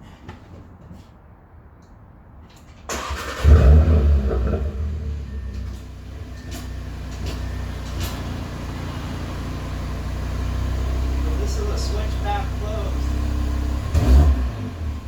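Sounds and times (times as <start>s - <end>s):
car engine revving and idling: 3.1s - 15.0s.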